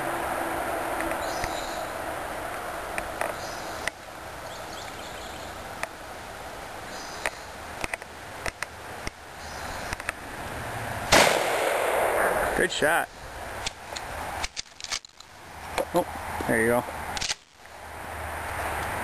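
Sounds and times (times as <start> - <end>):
steady background noise: 0.0 - 19.0
gun handling clicks: 7.2 - 9.2, 13.6 - 15.4, 17.1 - 17.7
shotgun blast: 11.1 - 12.7.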